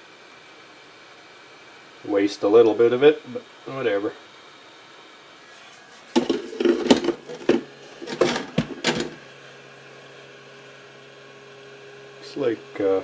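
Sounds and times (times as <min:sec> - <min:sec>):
heat gun electric hum: 0:00.0 - 0:13.0
tools clattering on a workbench: 0:06.1 - 0:09.2.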